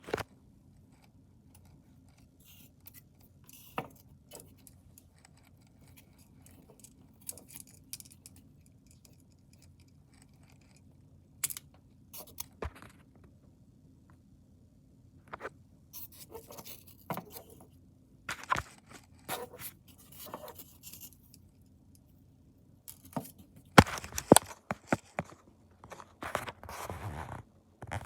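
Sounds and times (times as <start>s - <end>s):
small hard parts clicking and rattling: 2.4s - 11.7s.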